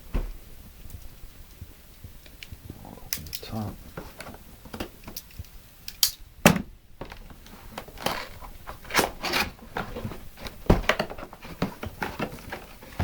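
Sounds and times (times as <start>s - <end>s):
cardboard rustling and scraping: 3.7s - 5.0s, 7.0s - 13.0s
knocks and thumps on box: 7.8s - 13.0s.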